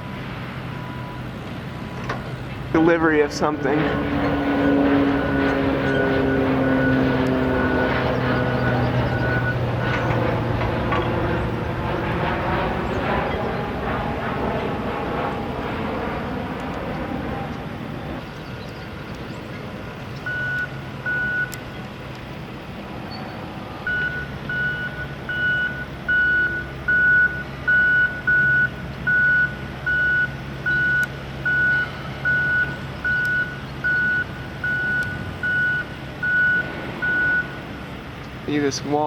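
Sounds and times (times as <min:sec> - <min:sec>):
reversing alarm beeping: 0:00.0 - 0:02.1, 0:04.5 - 0:10.1, 0:20.2 - 0:21.6, 0:23.8 - 0:37.6
low engine hum: 0:00.0 - 0:39.0.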